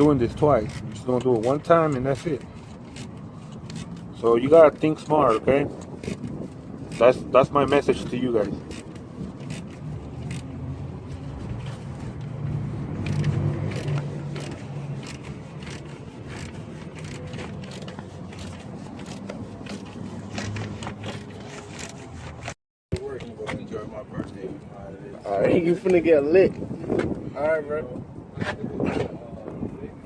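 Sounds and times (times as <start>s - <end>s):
metallic clicks and scrapes of tools: 0.0s - 22.6s
low vehicle hum: 0.0s - 27.3s.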